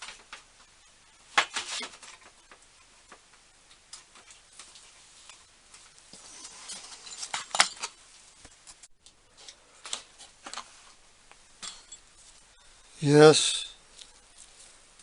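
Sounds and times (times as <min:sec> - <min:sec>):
steel collets clinking: 0:11.6 - 0:12.1.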